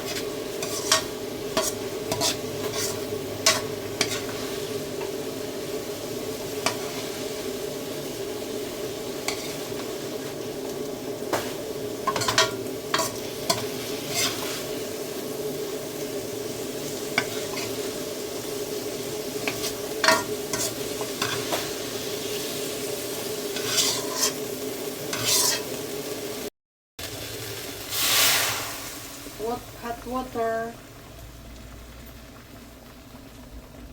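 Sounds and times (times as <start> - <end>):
utensil clinking and scraping pan: 0.0 - 4.4, 9.2 - 9.8, 12.0 - 14.6, 19.4 - 21.7, 23.6 - 24.4, 25.1 - 25.7
food sizzling in a pan: 0.0 - 33.9.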